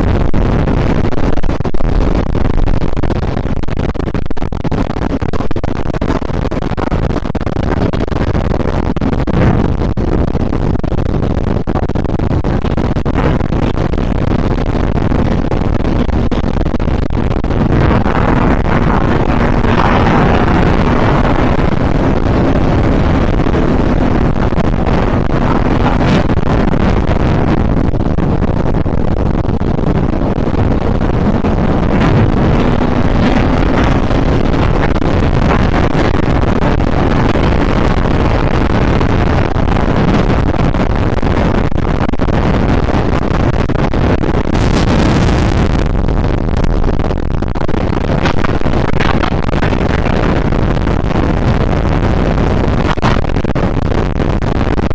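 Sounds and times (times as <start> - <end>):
wind noise on microphone: 0.0 - 54.9
boat engine hum: 17.6 - 27.4.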